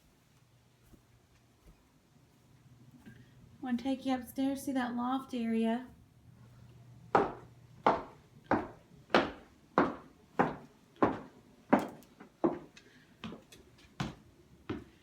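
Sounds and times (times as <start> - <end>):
footsteps going up stairs: 7.1 - 15.0.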